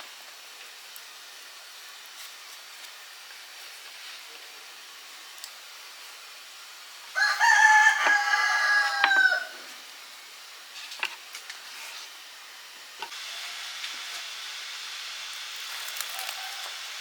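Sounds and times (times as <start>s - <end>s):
soft steady hiss: 0.0s - 17.0s
rooster crowing: 7.2s - 9.7s, 16.2s - 17.0s.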